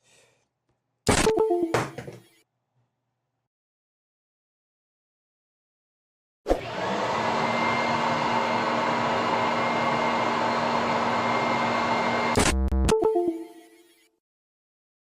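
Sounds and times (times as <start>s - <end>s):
electric appliance motor whirring: 6.5s - 12.4s.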